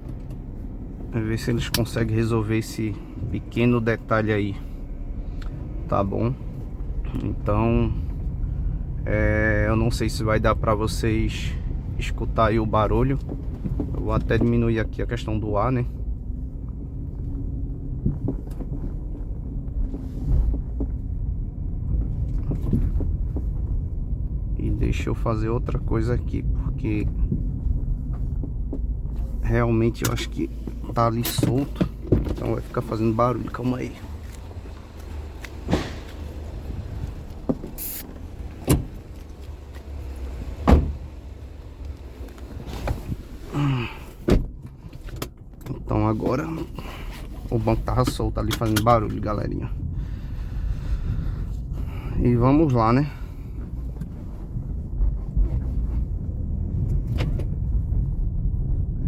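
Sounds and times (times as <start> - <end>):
car road rumble: 0.0 - 59.0
low bump: 5.0 - 59.0
light knocks and rattles: 11.9 - 15.2, 15.9 - 21.2, 27.0 - 49.4.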